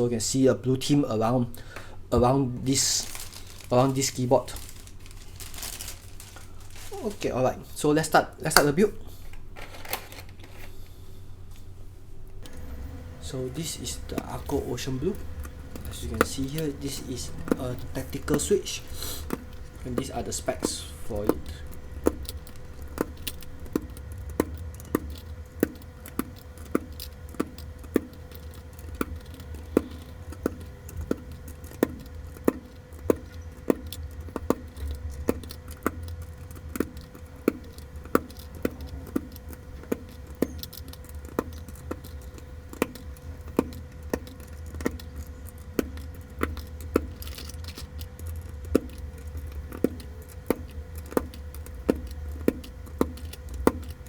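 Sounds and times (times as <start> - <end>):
low steady hum: 0.0 - 54.0
keyboard switches clicking into plate: 12.4 - 54.0.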